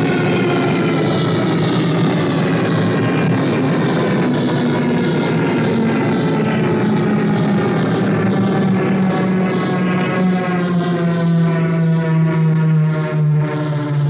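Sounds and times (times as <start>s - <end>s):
electronic drone sliding downward: 0.0s - 14.0s.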